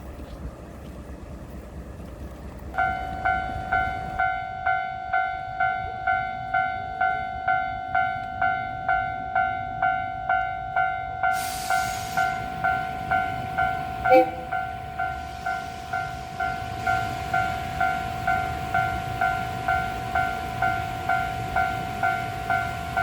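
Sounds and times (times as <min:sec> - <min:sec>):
low traffic rumble: 0:00.0 - 0:04.6
level-crossing alarm dinging: 0:02.8 - 0:23.0
hiss: 0:11.3 - 0:12.4.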